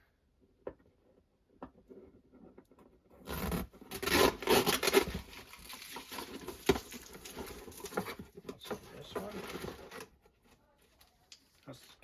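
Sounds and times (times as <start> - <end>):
cardboard rustling: 2.9 - 12.0
cardboard rasping and tearing: 3.2 - 8.2.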